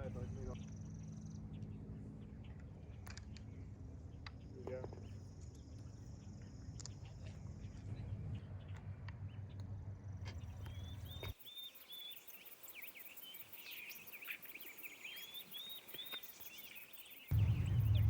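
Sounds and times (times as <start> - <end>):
songbirds chirping: 0.0 - 18.0
steady low rumble: 17.3 - 18.0.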